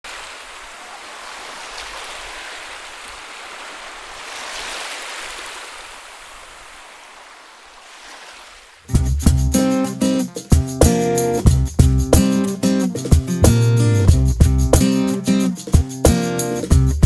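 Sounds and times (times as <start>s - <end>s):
rushing water: 0.0s - 9.0s.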